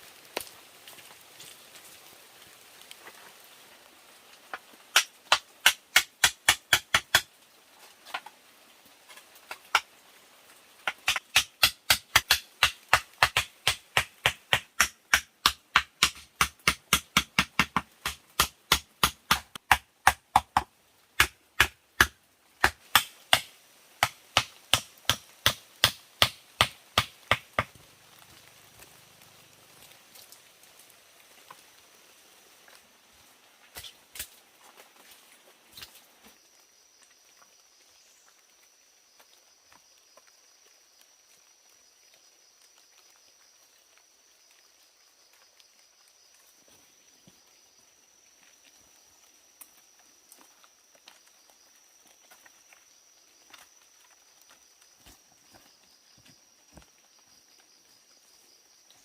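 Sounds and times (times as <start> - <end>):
hand tool knocking on wood: 10.9 - 27.7.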